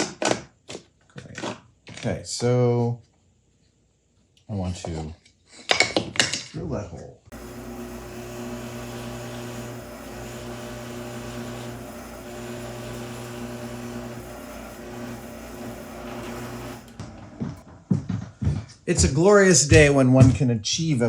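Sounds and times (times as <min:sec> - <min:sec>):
electric drill boring into wood: 0:07.3 - 0:17.6.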